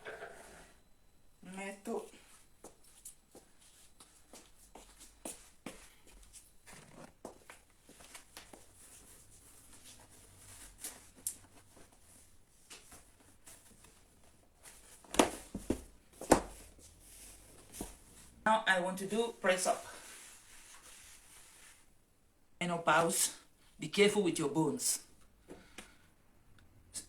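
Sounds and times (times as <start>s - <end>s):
faint knocks and rustles: 2.6s - 18.4s.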